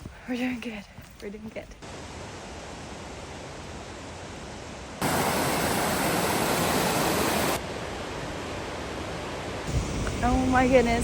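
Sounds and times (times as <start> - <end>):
waterfall rushing: 5.0 - 8.7.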